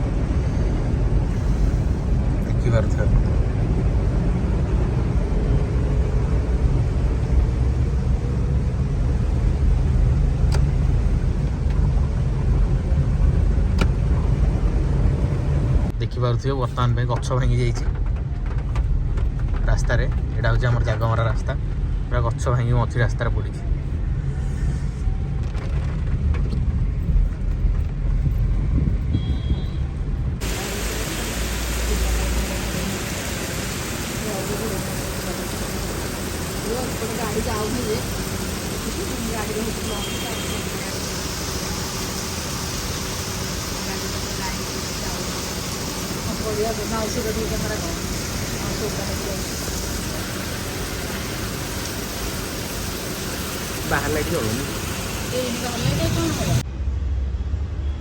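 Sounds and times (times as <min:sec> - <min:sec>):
heavy rain hissing: 0:00.0 - 0:11.4, 0:30.4 - 0:56.6
car engine and road noise: 0:00.0 - 0:58.0.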